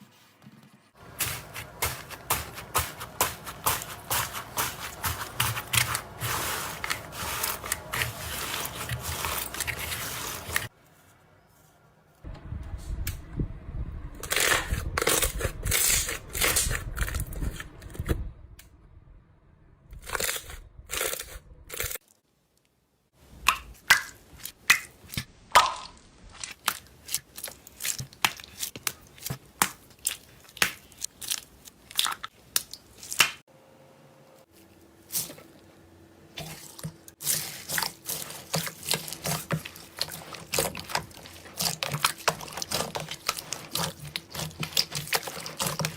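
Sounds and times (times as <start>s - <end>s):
slime squelching and crackling: 1.0s - 10.7s, 23.9s - 33.4s, 36.4s - 45.9s.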